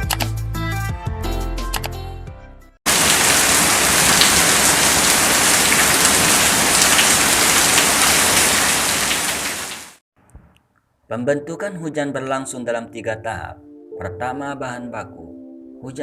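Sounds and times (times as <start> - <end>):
music: 0.0 - 2.8, 11.1 - 16.0
heavy rain: 2.9 - 10.0.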